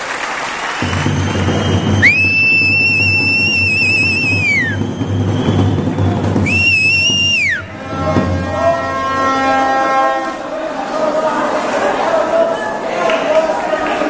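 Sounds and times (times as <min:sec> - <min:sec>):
shrill whistle blasts: 0:00.8 - 0:07.9.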